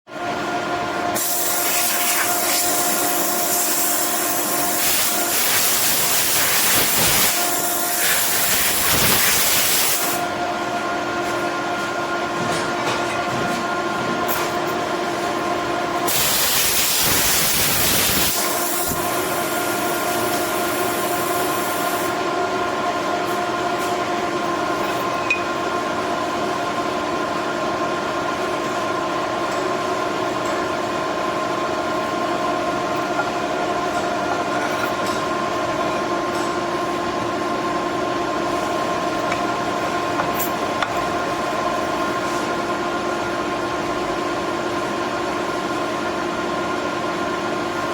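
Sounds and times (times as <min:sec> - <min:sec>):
loud hiss: 0:16.1 - 0:19.5.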